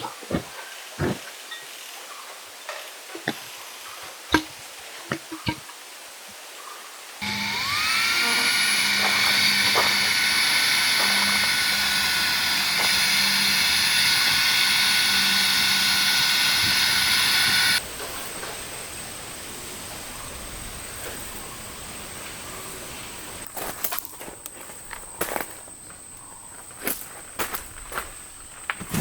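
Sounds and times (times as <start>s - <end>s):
small electric motor whine: 7.2s - 17.8s.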